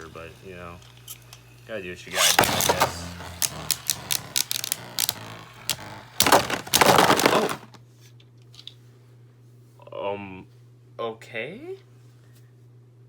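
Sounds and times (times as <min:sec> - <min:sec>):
spinning tops clashing and rattling: 0:00.0 - 0:07.7.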